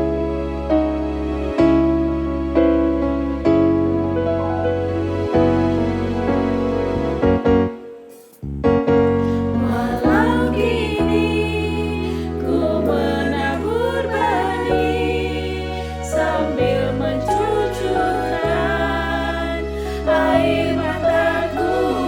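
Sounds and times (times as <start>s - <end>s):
keyboard chords and bass: 0.0s - 22.0s
vocal group singing gospel: 9.3s - 22.0s.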